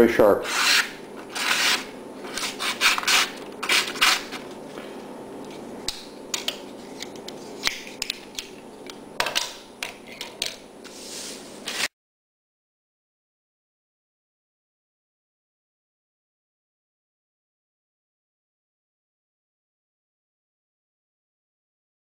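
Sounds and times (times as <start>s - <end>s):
pocket knife rubbing: 0.5s - 4.4s.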